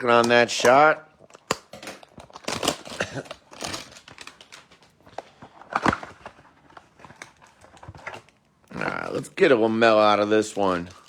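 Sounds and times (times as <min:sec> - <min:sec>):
foil pack crinkling: 0:00.0 - 0:11.0.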